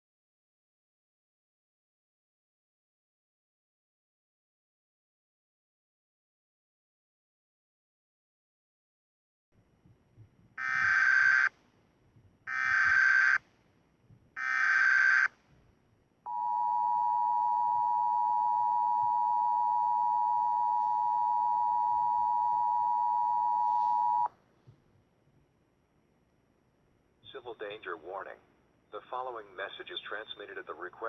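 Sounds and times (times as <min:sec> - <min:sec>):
two-tone attention signal: 0:16.3 - 0:24.3.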